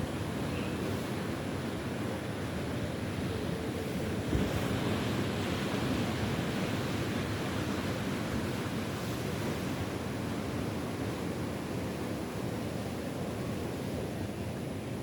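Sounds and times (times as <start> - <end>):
ocean surf on shore: 0.0 - 15.0.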